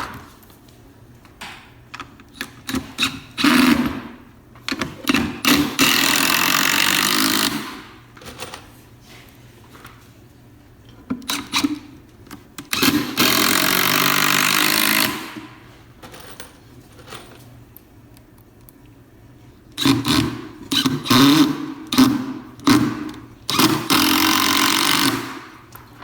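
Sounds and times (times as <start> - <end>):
power tool motor humming: 22.7 - 25.4.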